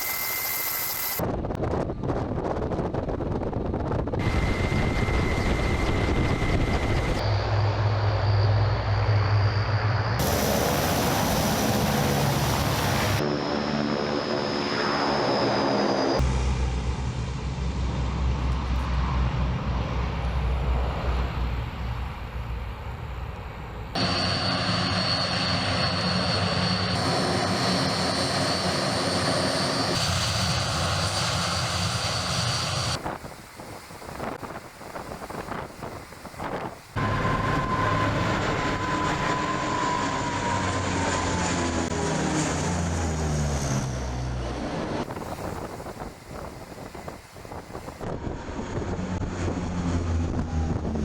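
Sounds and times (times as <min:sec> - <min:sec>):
military aircraft engines running: 0:00.0 - 0:51.0.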